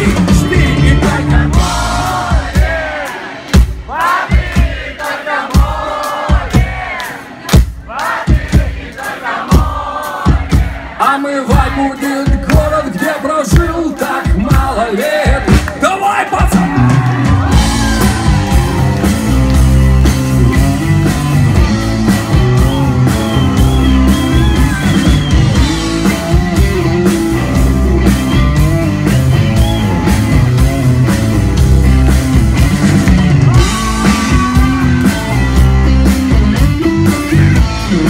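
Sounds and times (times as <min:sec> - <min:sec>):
rock band playing: 0:00.0 - 0:38.0
wavering lead guitar: 0:16.6 - 0:38.0.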